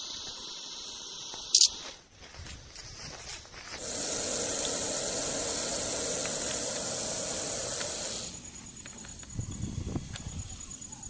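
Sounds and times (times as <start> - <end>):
snake hissing: 0.0 - 2.0, 3.7 - 8.6.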